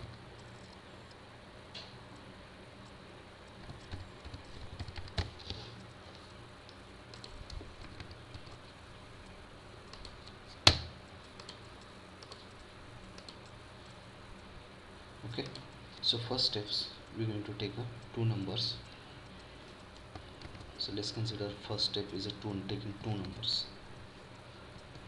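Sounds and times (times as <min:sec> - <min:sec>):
typing on computer keyboard: 0:03.6 - 0:05.4, 0:19.9 - 0:20.8.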